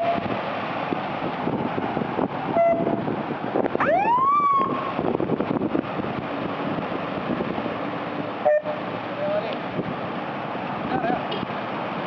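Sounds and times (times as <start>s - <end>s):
steady rushing noise: 0.0s - 12.0s
car horn toot: 2.6s - 2.9s, 8.4s - 8.8s
rising siren whoop: 3.8s - 5.1s.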